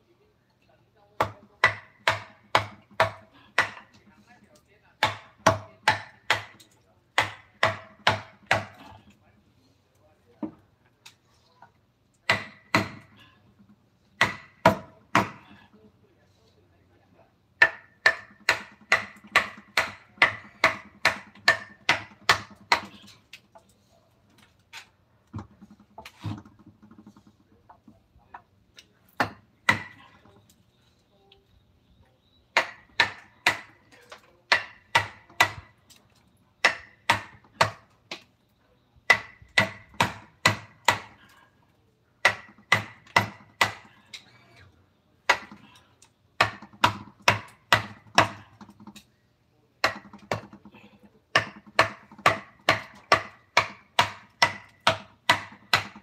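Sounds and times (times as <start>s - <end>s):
mallet striking chisel into wood: 1.2s - 3.8s, 5.0s - 6.6s, 7.2s - 8.8s, 12.3s - 13.1s, 14.2s - 15.4s, 17.6s - 22.9s, 29.2s - 30.0s, 34.5s - 35.7s, 36.6s - 38.2s, 39.1s - 41.2s, 42.2s - 43.9s, 46.4s - 48.4s, 51.3s - 56.0s.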